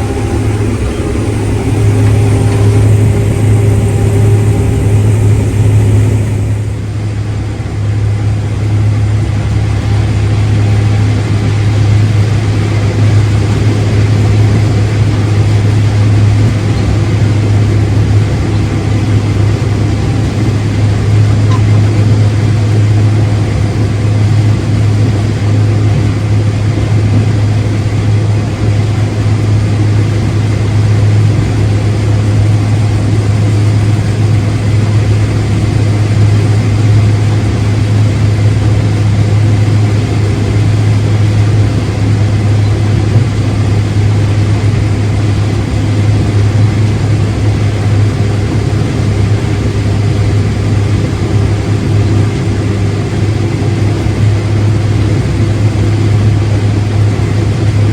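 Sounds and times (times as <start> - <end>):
farm machine engine droning: 0.0 - 57.9.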